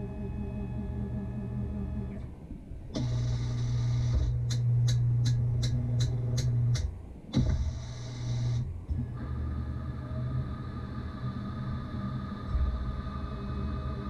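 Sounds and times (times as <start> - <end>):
lathe spindle humming: 7.7 - 14.0.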